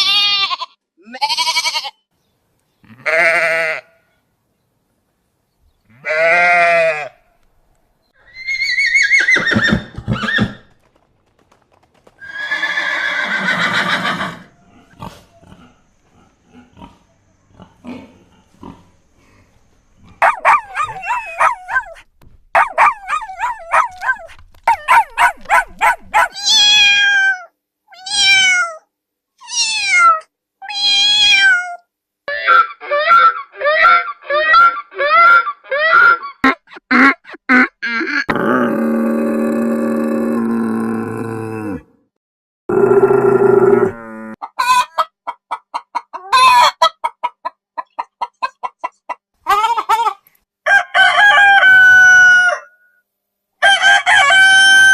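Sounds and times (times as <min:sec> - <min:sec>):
animal calls: 0:20.0 - 0:27.4.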